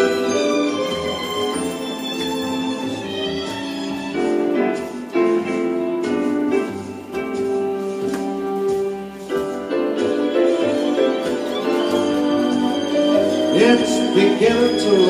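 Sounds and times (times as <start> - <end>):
instrumental christmas music: 0.0 - 15.0.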